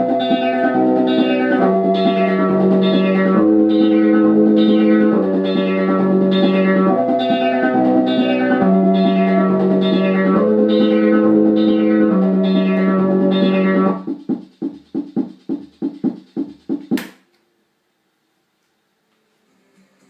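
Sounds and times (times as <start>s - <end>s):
electronic keyboard playing chords: 0.0s - 14.2s
sharp click: 16.9s - 17.4s.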